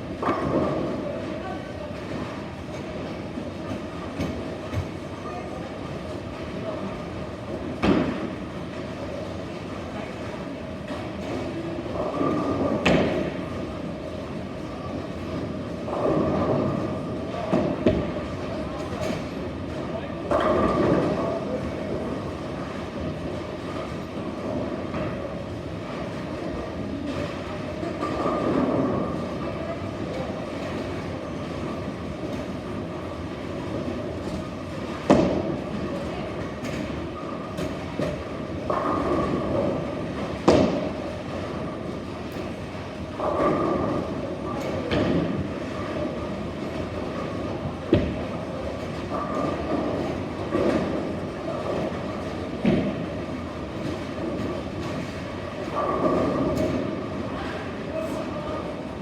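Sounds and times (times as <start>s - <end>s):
bowling balls rolling on lanes: 0.0s - 59.0s.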